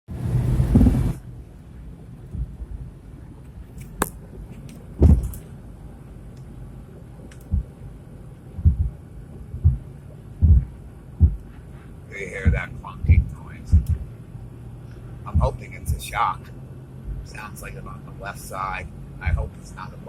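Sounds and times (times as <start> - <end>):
truck rumble: 0.0 - 20.0
dull low clunks: 0.5 - 1.2, 2.2 - 2.8, 5.0 - 5.5, 7.2 - 7.8, 8.5 - 11.7, 12.4 - 14.2, 14.9 - 16.0.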